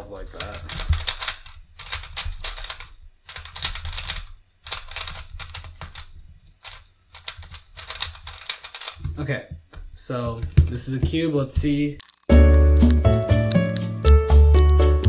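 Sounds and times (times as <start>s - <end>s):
puzzle cube clicking as layers turn: 0.2s - 9.0s, 12.0s - 15.0s.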